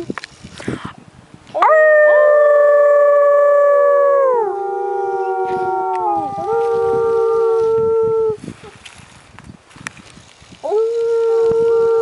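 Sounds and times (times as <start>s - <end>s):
wolves howling: 1.6s - 8.4s.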